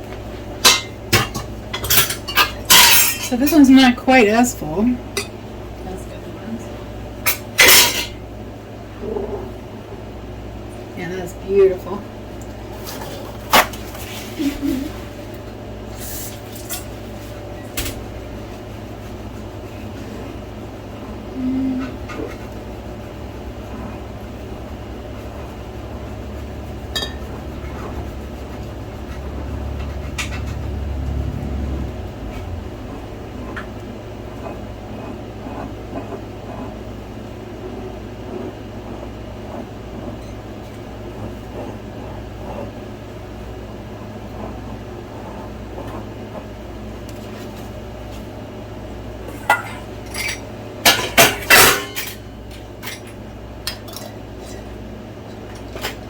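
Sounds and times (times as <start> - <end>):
low hum: 17.2 - 49.2.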